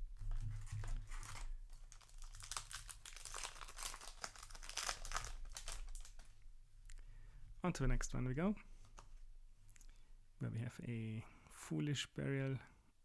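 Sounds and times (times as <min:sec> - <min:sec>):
foil wrapper crinkling: 0:00.2 - 0:06.3.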